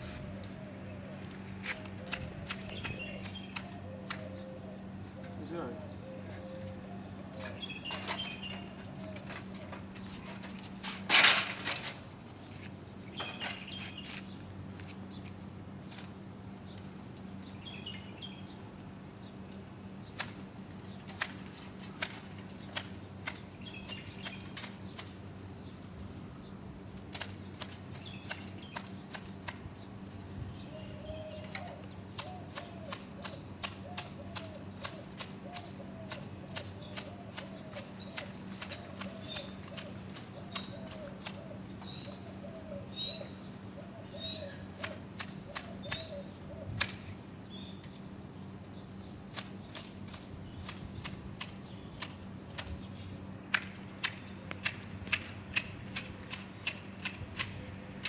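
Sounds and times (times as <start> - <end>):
leaves rustling: 0.0 - 17.8, 19.7 - 58.0
pruning shears snipping: 1.2 - 4.6, 20.0 - 25.7, 27.1 - 30.3, 30.9 - 43.2, 44.0 - 47.2, 49.3 - 58.0.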